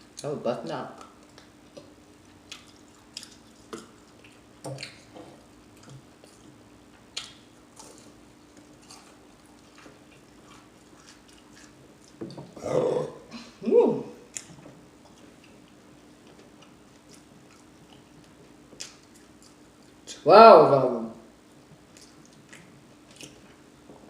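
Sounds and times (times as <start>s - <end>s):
faint steady hum: 0.0s - 24.0s
lip smacks: 1.0s - 6.5s, 7.1s - 12.2s, 14.3s - 15.8s, 16.6s - 20.2s, 21.9s - 23.5s
chewing mouth sounds: 1.0s - 12.6s, 14.3s - 20.2s, 21.7s - 23.7s.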